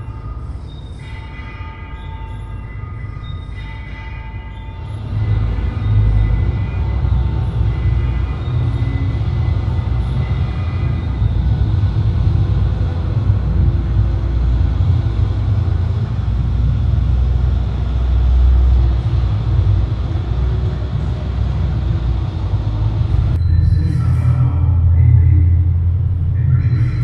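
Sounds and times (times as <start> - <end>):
loud low rumble: 5.0 - 27.0.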